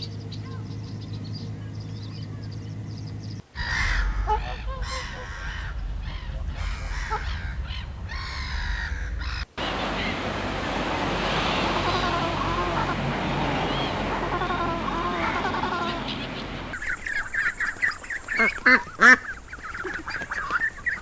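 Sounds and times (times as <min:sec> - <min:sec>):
chorus of birds chirping: 0:00.0 - 0:21.0
harsh bird calls: 0:00.0 - 0:21.0
low rumble: 0:00.6 - 0:15.9.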